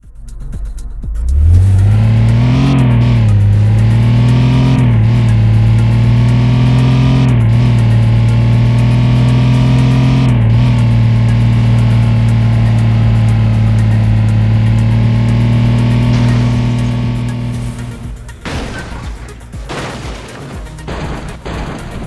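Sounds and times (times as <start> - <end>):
distorted electric guitar note bending: 1.3 - 18.8.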